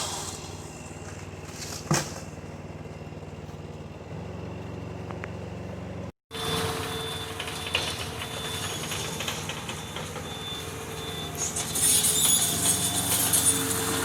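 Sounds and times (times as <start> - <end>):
heavy machinery engine running: 0.0 - 14.0
reversing alarm beeping: 6.3 - 14.0.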